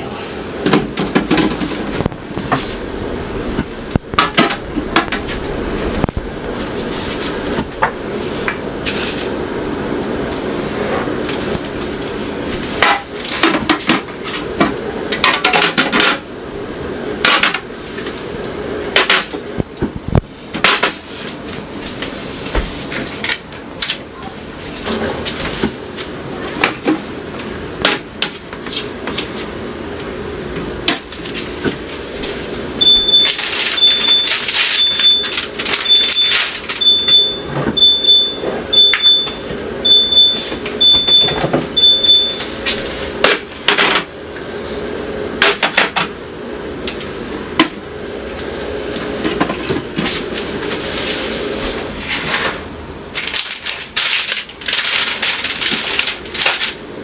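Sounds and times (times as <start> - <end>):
plastic shelves knocking and clattering: 0.6 - 2.2
high electronic beep: 32.8 - 42.4.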